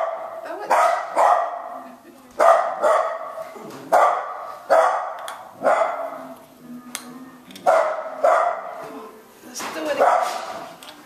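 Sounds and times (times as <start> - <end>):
dog barking: 0.0 - 1.8, 2.4 - 6.3, 7.6 - 8.8, 10.0 - 10.6.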